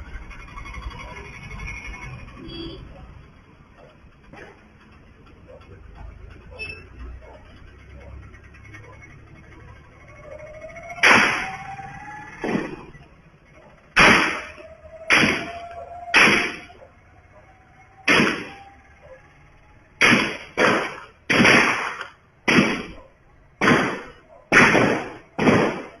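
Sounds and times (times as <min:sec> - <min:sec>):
gunshots with echo: 0:10.9 - 0:11.7, 0:14.0 - 0:16.8, 0:18.1 - 0:19.0, 0:20.0 - 0:26.0.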